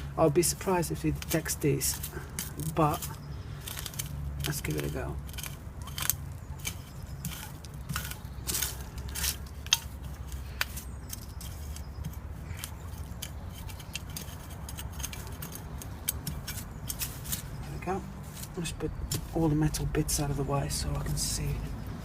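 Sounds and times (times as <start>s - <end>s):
handling clicks and scrapes: 0.0s - 22.0s.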